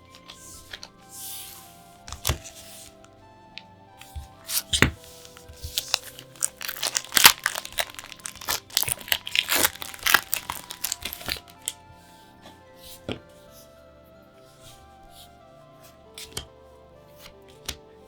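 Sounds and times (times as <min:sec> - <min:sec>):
packaging wrap crinkling and tearing: 0:00.0 - 0:03.1, 0:04.0 - 0:11.8
background music: 0:00.0 - 0:18.0.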